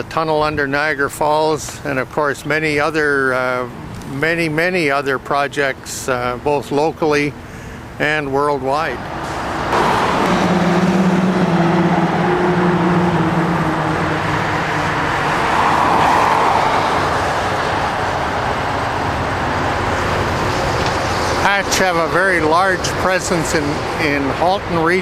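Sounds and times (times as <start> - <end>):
road traffic noise: 0.0 - 25.0
vehicle engine passing: 8.8 - 24.9.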